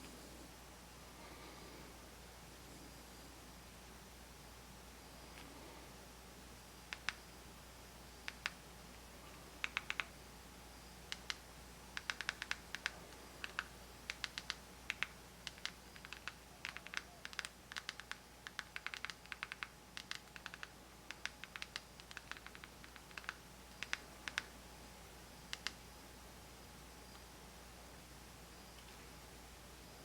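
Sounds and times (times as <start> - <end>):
remote buttons clicking: 6.9 - 7.2, 8.2 - 8.6, 9.6 - 10.1, 11.1 - 11.4, 12.0 - 24.5, 25.5 - 25.8.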